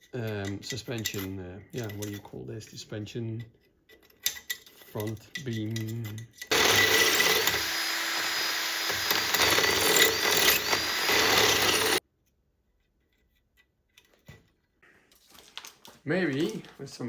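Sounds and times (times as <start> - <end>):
power tool running on metal: 6.5 - 12.0.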